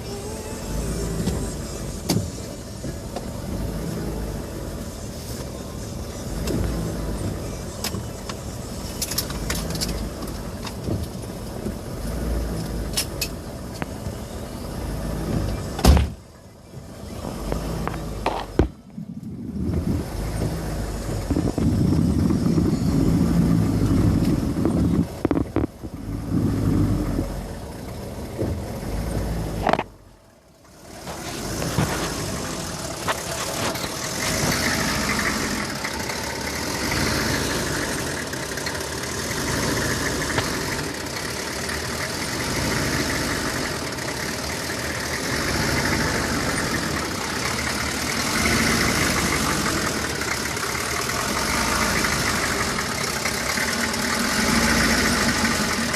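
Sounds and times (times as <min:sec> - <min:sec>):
pickup engine idling roughly: 0:30.5 - 0:55.9.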